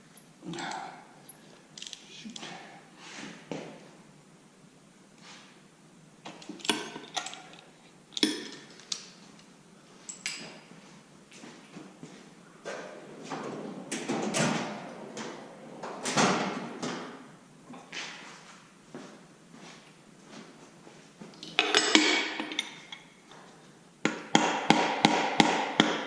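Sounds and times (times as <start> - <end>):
hand tools clinking on metal: 21.4 - 23.1.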